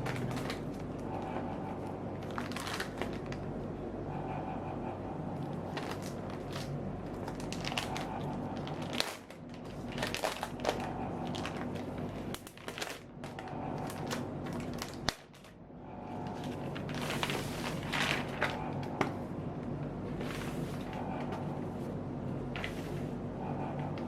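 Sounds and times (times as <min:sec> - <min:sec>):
packaging crinkling and clicks: 0:00.0 - 0:01.3, 0:02.2 - 0:03.5, 0:05.7 - 0:15.6
steady low hum: 0:00.0 - 0:24.0.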